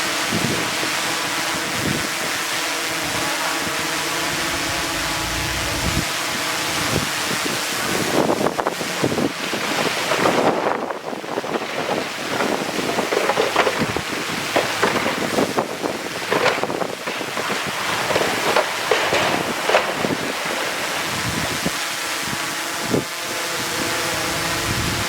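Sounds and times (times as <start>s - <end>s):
wind buffeting microphone: 4.2s - 6.1s.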